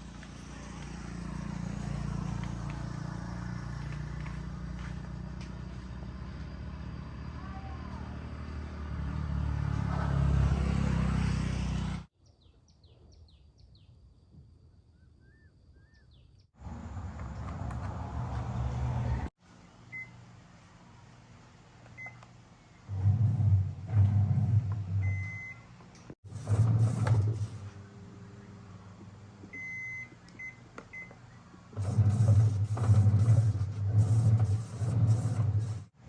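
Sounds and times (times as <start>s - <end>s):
washing machine motor hum: 22.9s - 25.5s, 26.2s - 28.4s, 31.8s - 36.0s.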